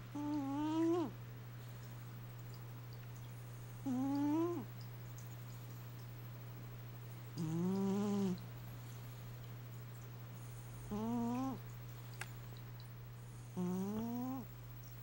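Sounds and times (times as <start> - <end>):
steady low hum: 0.0 - 15.0
cat snoring: 0.1 - 1.2, 3.8 - 4.7, 7.4 - 8.4, 10.5 - 11.6, 13.5 - 14.5.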